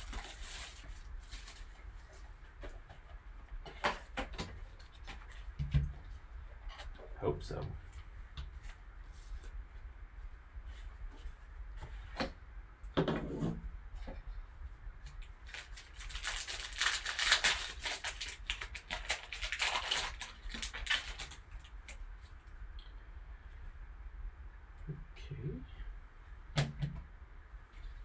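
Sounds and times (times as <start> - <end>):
plastic wrapping crinkling and tearing: 0.0 - 2.1, 15.2 - 22.3.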